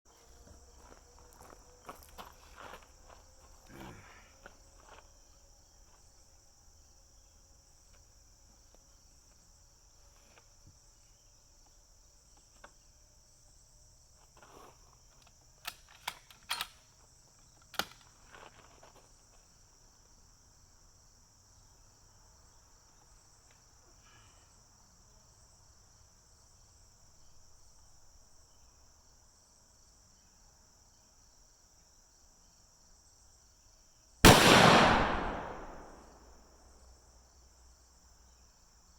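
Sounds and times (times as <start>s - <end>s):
insects chirring: 0.1s - 36.4s
sharp clicks: 34.3s - 36.2s.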